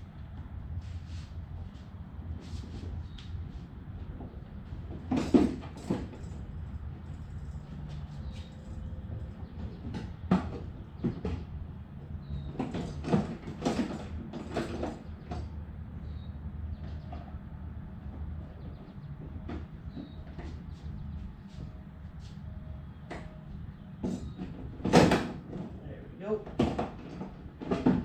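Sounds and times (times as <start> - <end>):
steady low hum: 0.0 - 28.0
knocks and clunks: 4.2 - 6.4, 9.2 - 11.6, 12.3 - 15.6, 18.0 - 21.1, 24.0 - 25.8, 26.4 - 28.0.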